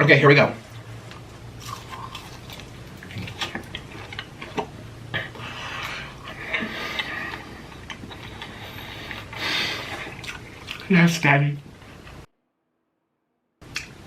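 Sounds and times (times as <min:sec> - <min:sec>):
person chewing food: 0:00.6 - 0:10.9.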